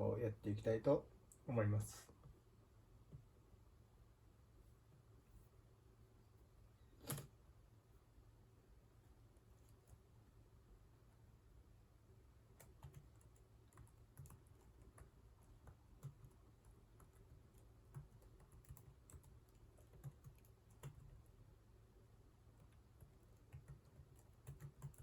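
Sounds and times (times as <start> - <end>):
low steady hum: 0.0 - 25.0
computer keyboard typing: 12.6 - 21.3, 22.6 - 25.0.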